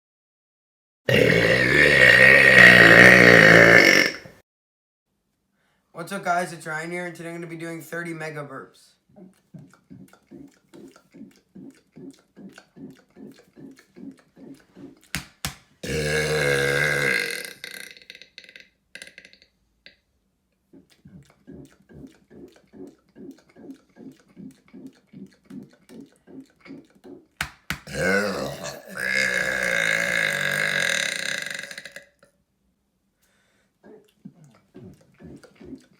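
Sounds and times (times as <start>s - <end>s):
man burping loudly: 1.1s - 4.4s, 15.8s - 19.4s, 27.9s - 32.3s
short quick throat sounds: 9.1s - 15.2s, 20.7s - 29.2s, 33.8s - 35.9s.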